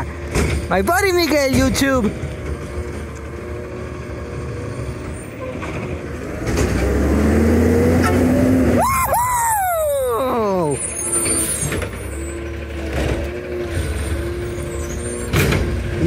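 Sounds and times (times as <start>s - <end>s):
garbage truck engine running: 0.0s - 16.0s.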